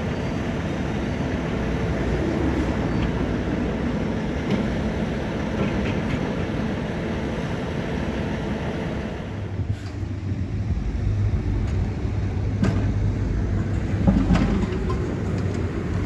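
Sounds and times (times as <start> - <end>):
large engine humming: 0.0 - 16.0.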